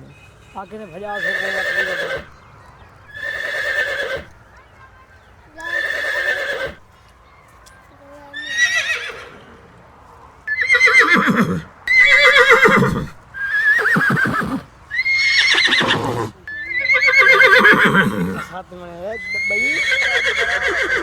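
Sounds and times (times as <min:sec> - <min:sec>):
horse whinnying: 0:01.0 - 0:02.4, 0:03.1 - 0:04.4, 0:05.6 - 0:06.9, 0:08.4 - 0:09.5, 0:10.5 - 0:18.5, 0:19.2 - 0:21.0.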